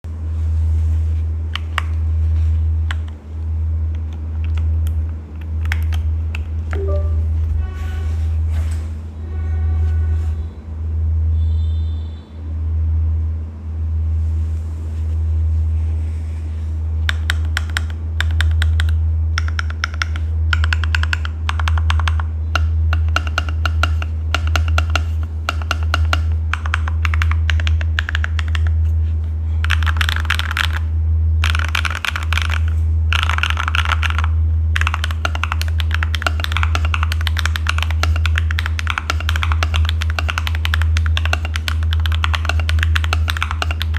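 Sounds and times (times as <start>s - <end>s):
mechanical keyboard typing: 4.0s - 7.1s, 17.1s - 28.9s, 29.6s - 43.9s
steady low hum: 12.1s - 43.9s.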